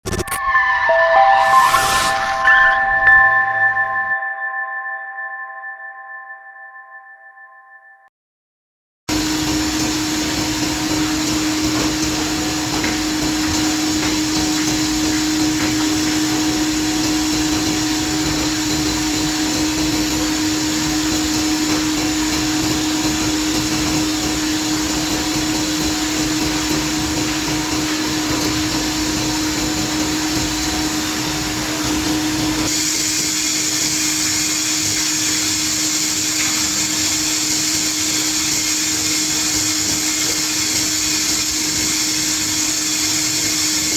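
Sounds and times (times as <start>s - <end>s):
woodworking machine whirring: 9.1s - 43.9s.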